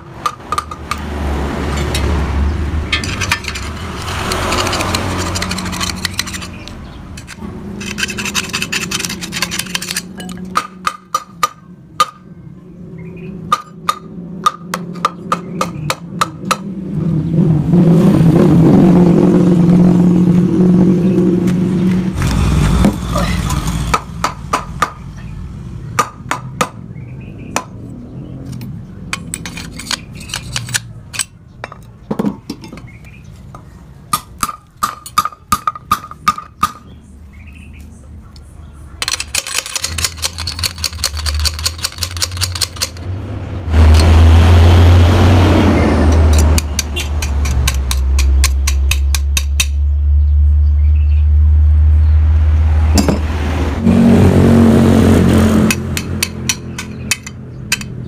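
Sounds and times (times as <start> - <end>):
hammering on metal: 10.2 - 12.3, 13.5 - 16.7, 26.0 - 26.8, 34.1 - 36.9, 46.1 - 49.8, 55.6 - 58.0.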